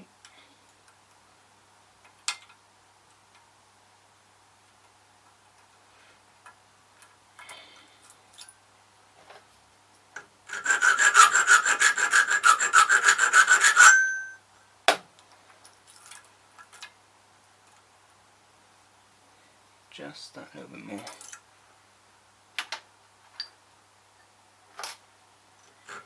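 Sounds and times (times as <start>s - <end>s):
hand file cutting metal: 10.5s - 14.4s
brief metallic ring: 13.8s - 14.4s.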